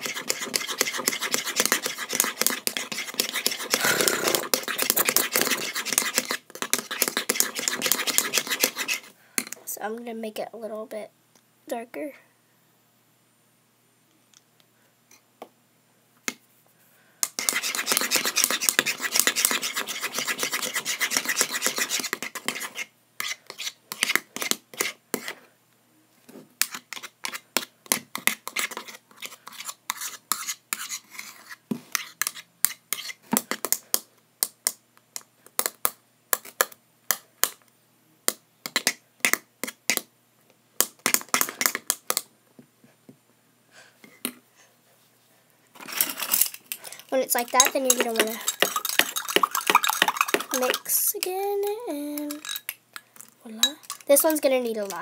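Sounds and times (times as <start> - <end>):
utensil stirring slime in a bowl: 0.0 - 9.5, 17.2 - 25.4, 26.6 - 37.6, 46.3 - 52.8, 53.4 - 55.0.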